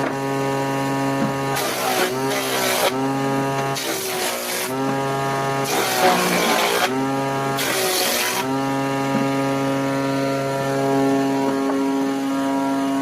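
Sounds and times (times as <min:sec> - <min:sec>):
woodworking machine motor running: 0:00.0 - 0:13.0
hiss of wood cutting: 0:01.5 - 0:03.0, 0:03.7 - 0:04.8, 0:05.6 - 0:06.9, 0:07.5 - 0:08.5.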